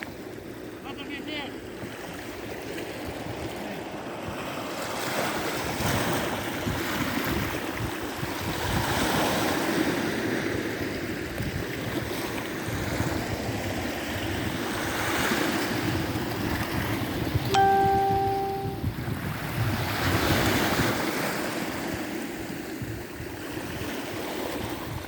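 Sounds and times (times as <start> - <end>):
sea waves washing onto beach: 0.0 - 18.8
wind buffeting microphone: 1.8 - 17.5, 18.8 - 21.1, 21.7 - 25.0
short pitched tone: 17.5 - 18.9.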